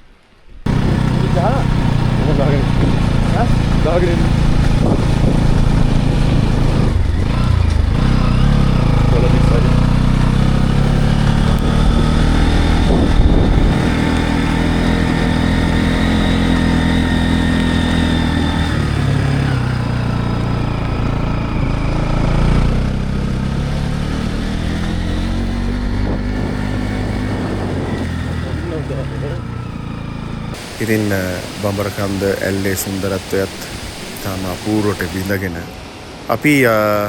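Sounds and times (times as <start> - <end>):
motorcycle engine running: 0.7 - 35.3.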